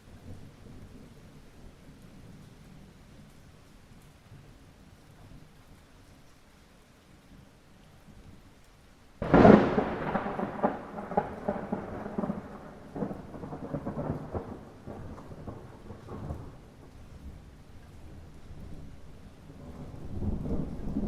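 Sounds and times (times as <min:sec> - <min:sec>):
rain pattering: 0:00.0 - 0:21.0
thunder crack and rumble: 0:09.2 - 0:21.0.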